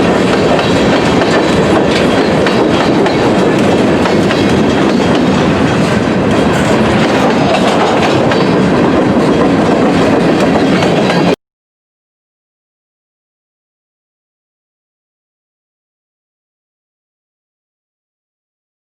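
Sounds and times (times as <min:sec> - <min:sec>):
freight train wheels clattering: 0:00.0 - 0:11.4.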